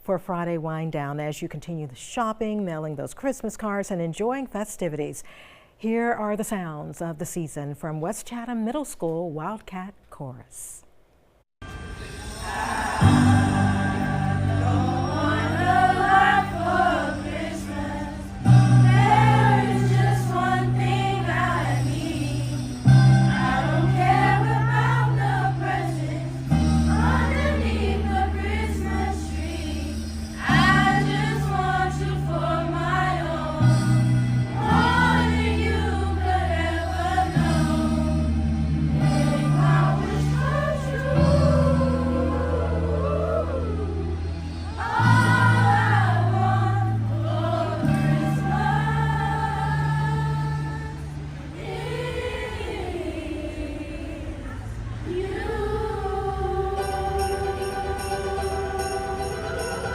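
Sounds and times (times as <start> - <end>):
held accompaniment chords: 11.6 - 59.9
children's chorus singing in unison: 12.2 - 59.9.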